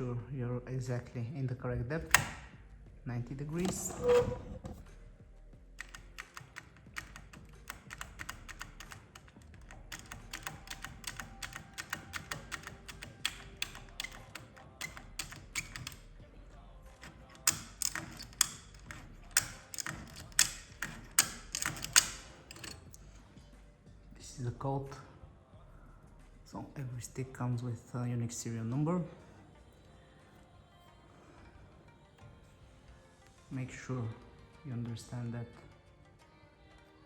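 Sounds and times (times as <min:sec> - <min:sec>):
metallic clicks of lock picking: 0:02.0 - 0:02.5, 0:05.8 - 0:16.1, 0:16.9 - 0:22.9.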